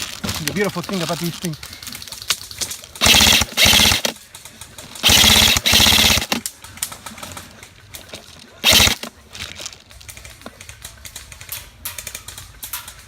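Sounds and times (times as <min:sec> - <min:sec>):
airsoft rifle rapid clicking: 0:01.7 - 0:07.5, 0:08.6 - 0:09.2.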